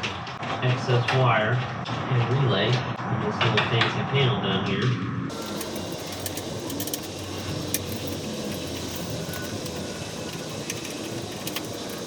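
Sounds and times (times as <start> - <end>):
steady machine noise: 5.3 - 12.0.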